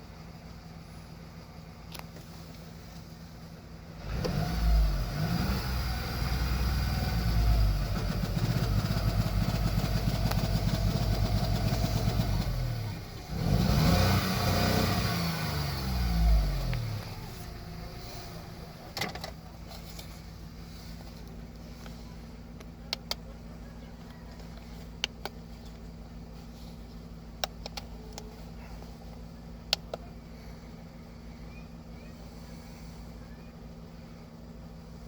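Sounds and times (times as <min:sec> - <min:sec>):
car engine revving: 0:03.9 - 0:19.0.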